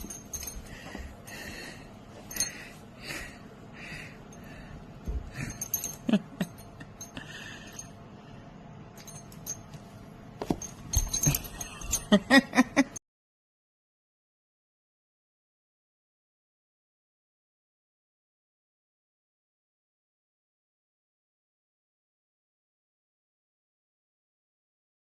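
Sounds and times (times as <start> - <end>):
collar tags jingling: 0.0 - 1.7, 5.3 - 7.9, 10.5 - 12.4.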